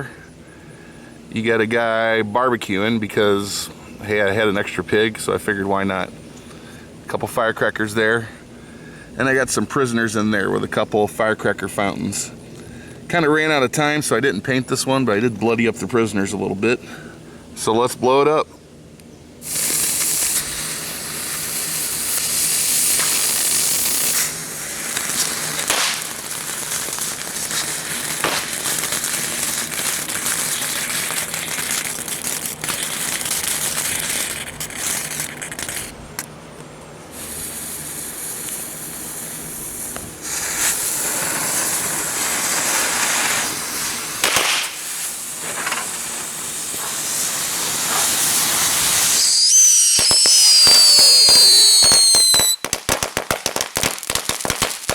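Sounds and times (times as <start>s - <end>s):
ground fireworks hissing: 0.0s - 17.9s, 19.4s - 54.9s
whistling fireworks: 19.4s - 35.9s, 37.1s - 54.9s
sharp firework pops: 19.4s - 36.3s, 37.2s - 54.9s.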